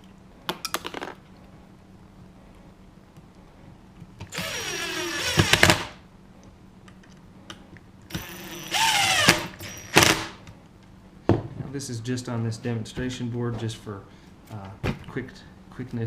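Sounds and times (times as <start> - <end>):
cordless drill driving screws: 4.3 - 5.9, 8.1 - 10.4.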